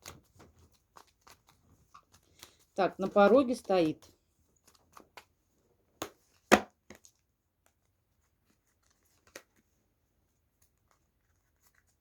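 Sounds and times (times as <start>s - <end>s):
cards tapping on a table: 6.0s - 7.0s.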